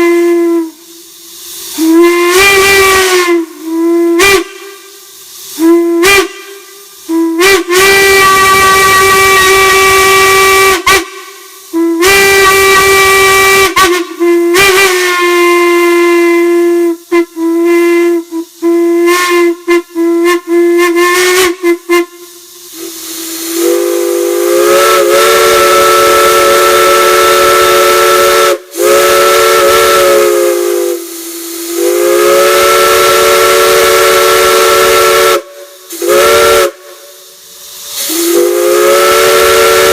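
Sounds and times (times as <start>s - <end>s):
single-note steam whistle: 0.0s - 39.9s
steam hissing: 0.0s - 39.9s.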